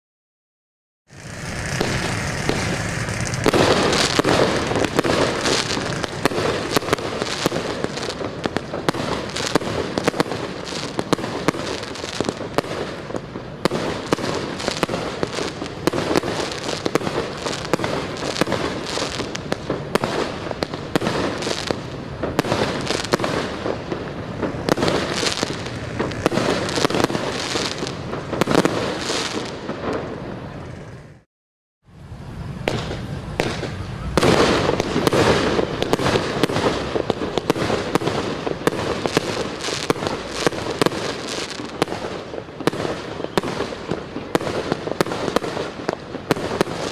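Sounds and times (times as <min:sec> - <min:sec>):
fireworks bangs: 0:01.1 - 0:31.3, 0:32.2 - 0:46.9
fireworks crackling and popping: 0:01.1 - 0:31.3, 0:32.2 - 0:46.9.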